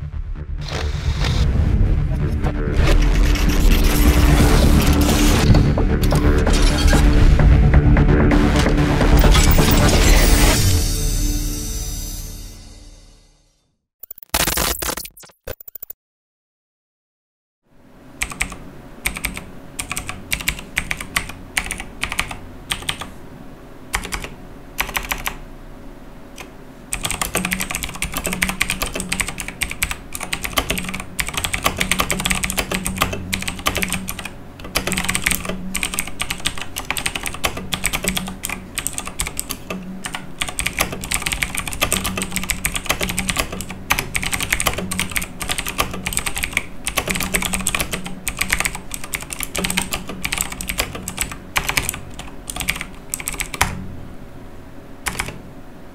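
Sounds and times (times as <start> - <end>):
mechanical keyboard typing: 18.2 - 23.1, 23.9 - 25.4, 26.9 - 53.8, 55.1 - 55.4.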